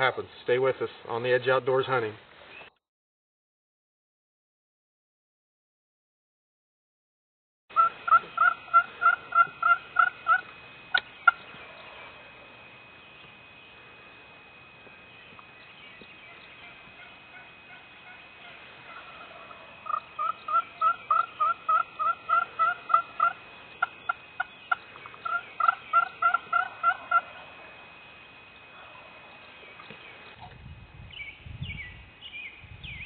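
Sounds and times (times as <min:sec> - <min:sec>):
turkey clucks: 0:07.8 - 0:12.2, 0:15.4 - 0:27.8
turkey yelping: 0:07.8 - 0:12.3, 0:16.2 - 0:27.8.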